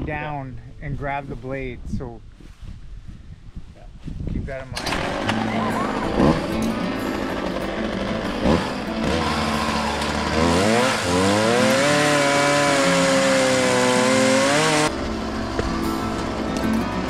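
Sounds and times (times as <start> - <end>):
chainsaw idling and revving: 4.8 - 15.3.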